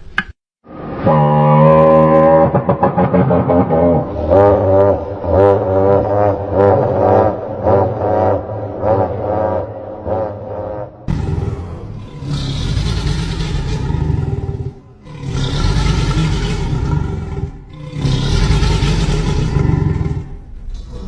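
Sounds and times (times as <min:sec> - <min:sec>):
dinosaur calls with breathy hiss: 0:11.1 - 0:17.1
heavy low rumble: 0:11.1 - 0:21.0.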